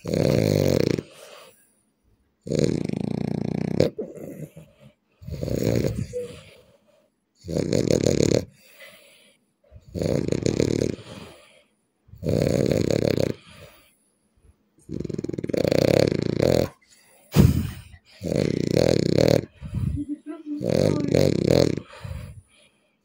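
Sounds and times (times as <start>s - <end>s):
man snoring loudly: 0.0s - 1.5s, 2.4s - 4.6s, 5.2s - 6.4s, 7.4s - 8.6s, 9.9s - 11.5s, 12.2s - 13.8s, 14.8s - 16.7s, 18.2s - 19.8s, 20.6s - 22.4s.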